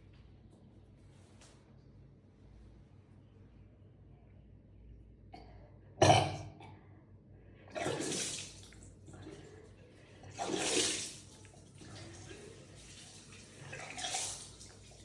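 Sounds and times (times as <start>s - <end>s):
person retching water: 7.7s - 9.6s.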